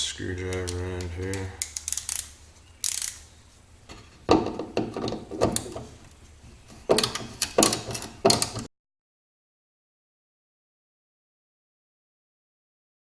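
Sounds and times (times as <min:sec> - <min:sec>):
screwdriver turning and scraping: 0:00.4 - 0:08.7.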